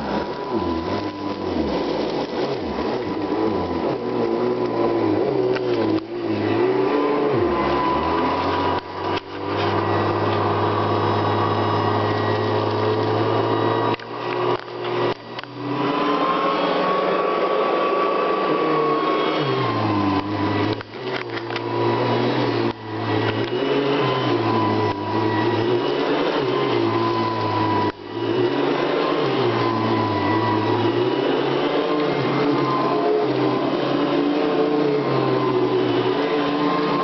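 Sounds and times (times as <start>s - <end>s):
vacuum cleaner running: 0.0s - 37.0s.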